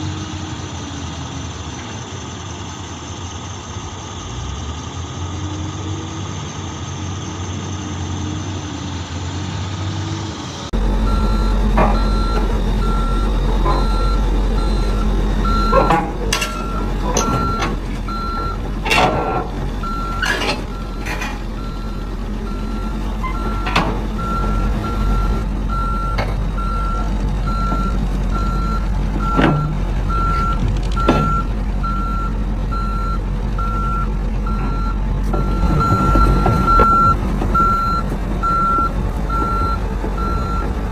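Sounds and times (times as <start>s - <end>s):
diesel engine rumble: 0.0s - 40.9s
reversing alarm beeping: 11.0s - 40.7s
metallic clanks: 15.5s - 21.8s.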